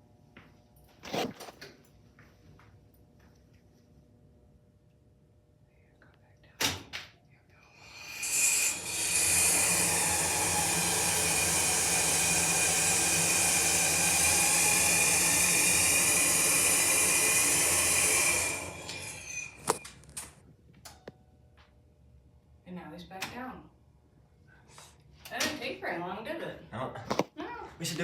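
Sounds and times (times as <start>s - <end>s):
hydraulic elevator unit hissing: 7.8s - 19.9s.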